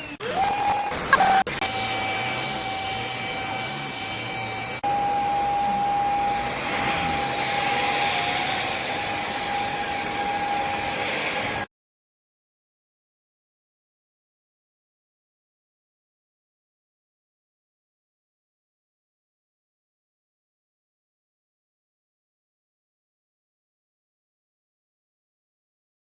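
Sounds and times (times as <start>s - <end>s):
vacuum cleaner motor whine: 0.0s - 11.7s.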